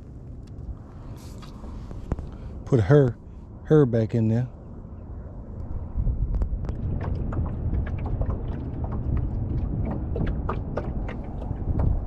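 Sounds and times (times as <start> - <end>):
wind buffeting microphone: 4.7 - 12.0.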